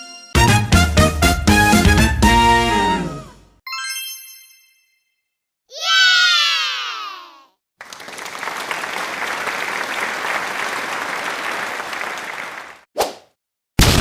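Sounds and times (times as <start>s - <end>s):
crowd clapping: 7.8s - 12.8s.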